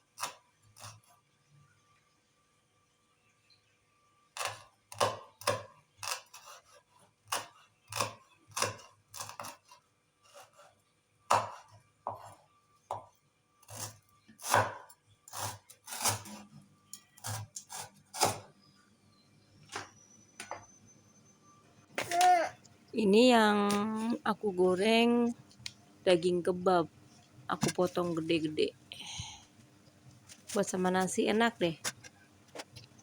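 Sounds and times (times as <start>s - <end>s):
knife chopping on cutting board: 11.3s - 13.1s, 13.8s - 14.9s.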